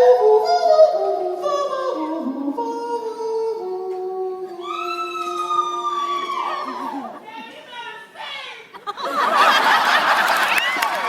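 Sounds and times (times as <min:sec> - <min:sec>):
a cappella voices singing: 0:00.0 - 0:07.2.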